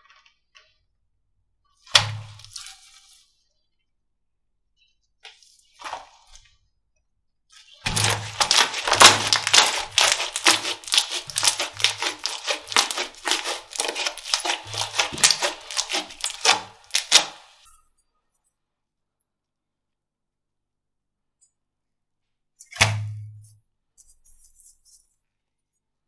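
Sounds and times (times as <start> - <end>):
slime squeezed crackling: 7.9 - 17.6.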